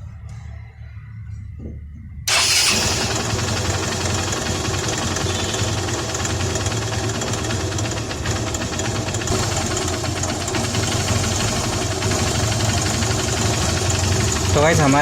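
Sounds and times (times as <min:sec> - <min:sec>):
motorcycle engine running: 0:02.3 - 0:15.0.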